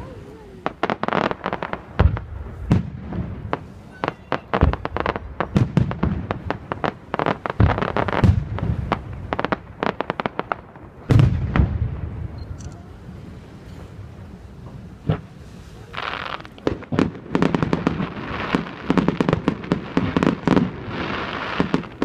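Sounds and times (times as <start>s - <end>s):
fireworks popping and booming: 0.0s - 12.5s, 13.6s - 22.0s.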